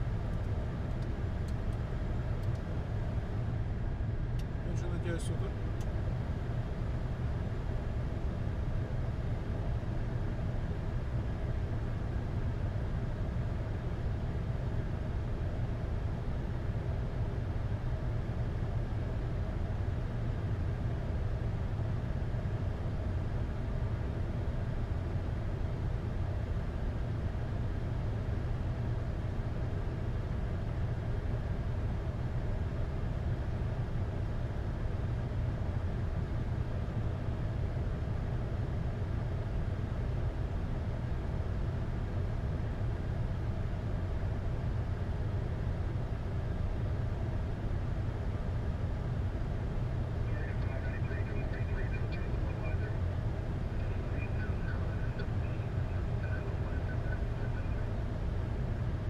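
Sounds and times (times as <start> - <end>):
aircraft cockpit low rumble: 0.0 - 59.0
faint steady hums: 0.0 - 59.0.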